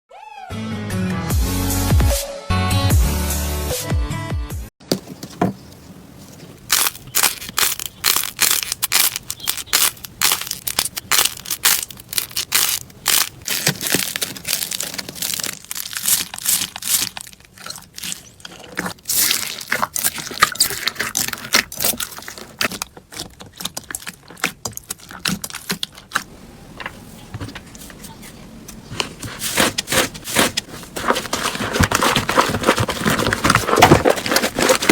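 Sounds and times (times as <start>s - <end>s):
slime crackling and popping: 6.7s - 26.3s.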